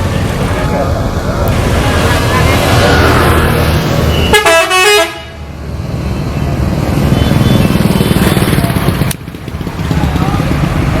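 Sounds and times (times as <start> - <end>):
diesel engine rumbling: 0.0 - 11.0
bus musical horn notes: 4.2 - 5.4.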